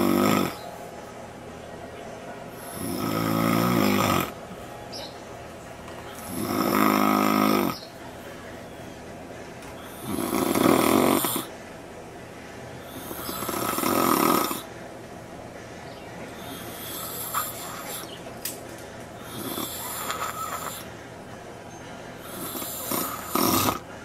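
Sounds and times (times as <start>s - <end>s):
man snoring: 0.0s - 0.6s, 2.6s - 4.4s, 6.2s - 7.8s, 9.9s - 11.5s, 12.9s - 14.7s, 16.4s - 18.0s, 19.2s - 20.9s, 22.2s - 23.9s.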